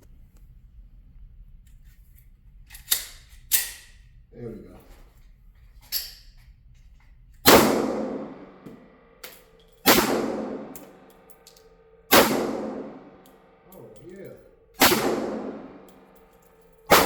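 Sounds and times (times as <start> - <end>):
pistol shots with ringing echo: 7.5 - 14.0, 14.8 - 17.0.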